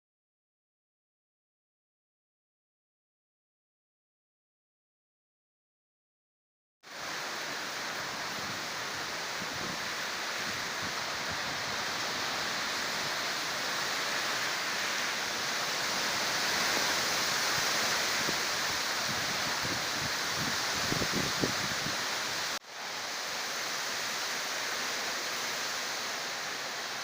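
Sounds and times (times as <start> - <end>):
heavy rain and wind: 6.8 - 27.0.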